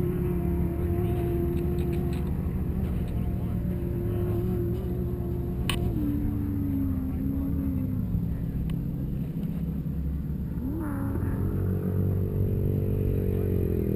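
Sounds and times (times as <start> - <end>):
vehicle engine rumbling: 0.0 - 13.9.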